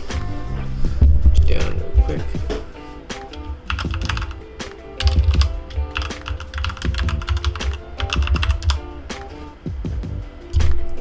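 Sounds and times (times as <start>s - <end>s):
lofi hip-hop music: 0.0s - 11.0s
computer keyboard key clicks: 3.3s - 4.4s, 5.0s - 9.3s.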